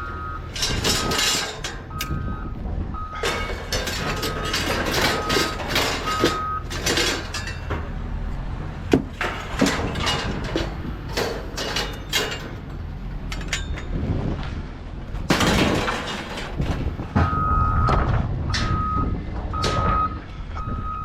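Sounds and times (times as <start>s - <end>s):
reversing alarm beeping: 0.0s - 6.7s, 17.2s - 21.0s
heavy vehicle engine rumble: 0.0s - 21.0s
scrap metal clanking: 0.4s - 2.2s, 3.1s - 8.2s, 8.9s - 14.0s, 15.2s - 17.3s.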